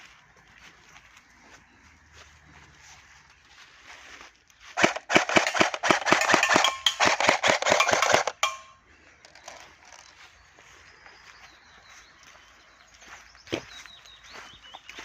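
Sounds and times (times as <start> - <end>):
airsoft rifle firing bursts: 4.8 - 8.7.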